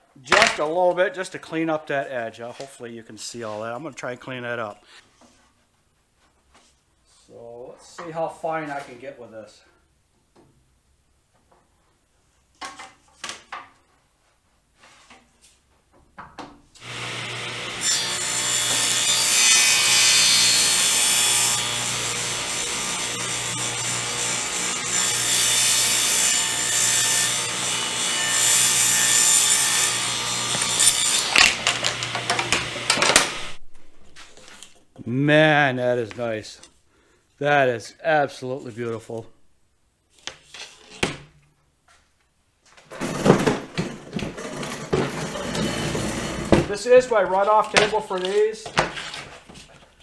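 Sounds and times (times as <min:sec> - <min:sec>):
table saw cutting wood: 0:16.8 - 0:33.6, 0:44.6 - 0:46.7
wood clattering: 0:30.5 - 0:34.8.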